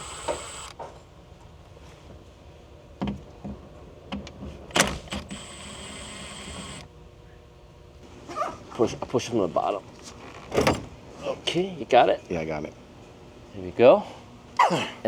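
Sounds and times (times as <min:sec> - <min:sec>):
cordless power tool whining: 0:00.0 - 0:00.8, 0:04.7 - 0:06.9.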